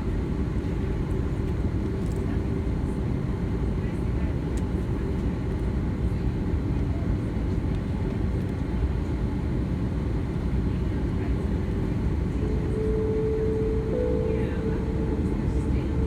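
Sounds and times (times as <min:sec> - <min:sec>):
airliner cabin engine rumble: 0:00.0 - 0:16.0
steady tone: 0:12.5 - 0:16.0.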